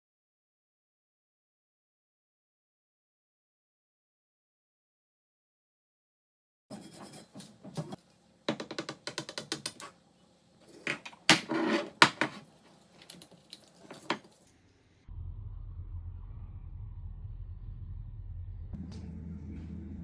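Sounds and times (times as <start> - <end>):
low steady hum: 10.0 - 20.0.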